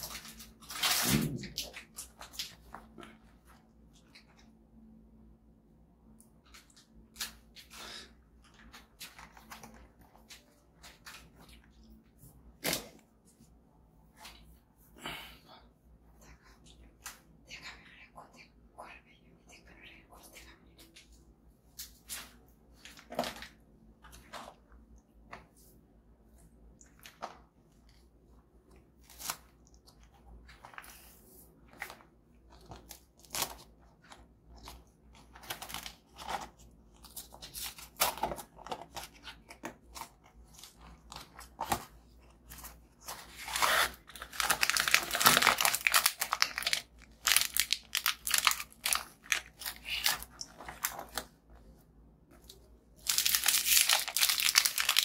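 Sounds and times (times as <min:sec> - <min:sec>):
plastic wrappers crinkling: 0:29.1 - 0:51.4, 0:52.4 - 0:55.0.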